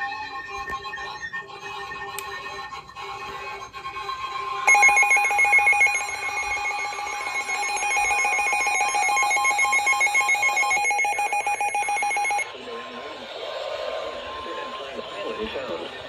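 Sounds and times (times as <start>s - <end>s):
harsh fluttering electronic alarm tone: 4.7s - 12.5s.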